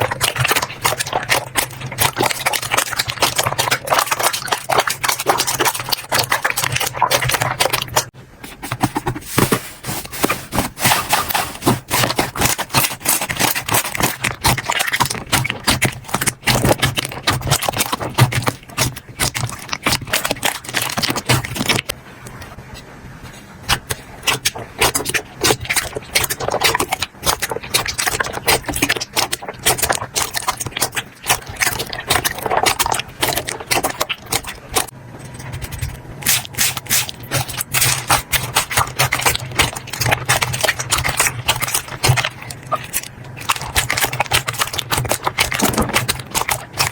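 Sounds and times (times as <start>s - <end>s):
slime crackling and popping: 11.0s - 21.9s, 23.7s - 46.9s.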